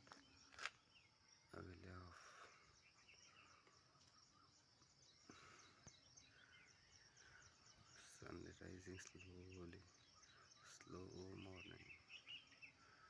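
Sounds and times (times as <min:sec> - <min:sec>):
faint birds chirping: 0:00.0 - 0:13.0
steady high-pitched hiss: 0:00.0 - 0:13.0.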